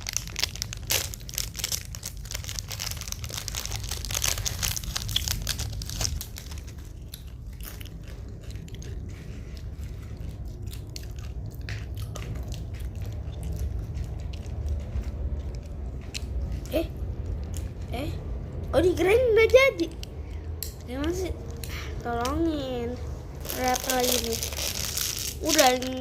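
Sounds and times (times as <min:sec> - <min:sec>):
plastic packaging crinkling: 0:00.0 - 0:08.0, 0:23.4 - 0:26.0.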